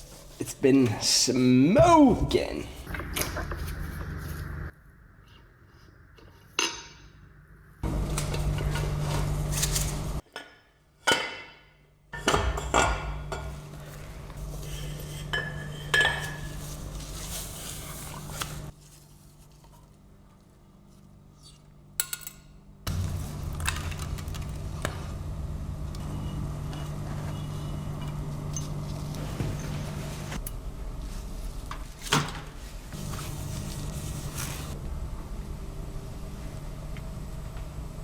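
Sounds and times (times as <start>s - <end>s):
steady low hum: 1.0s - 10.2s, 22.8s - 38.0s.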